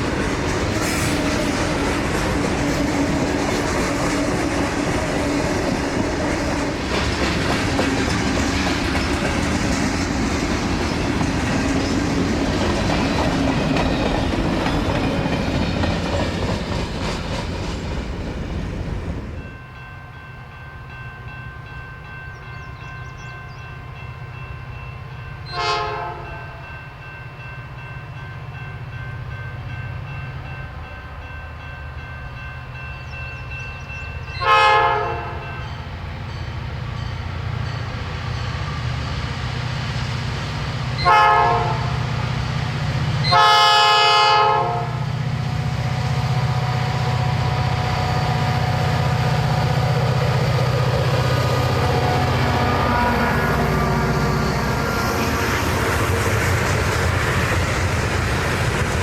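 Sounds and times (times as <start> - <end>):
diesel locomotive rumble: 0.0 - 19.9, 28.5 - 59.0
train horn toot: 25.4 - 26.8, 34.4 - 35.7, 41.0 - 42.2, 43.2 - 45.2, 45.9 - 49.9, 51.7 - 55.7.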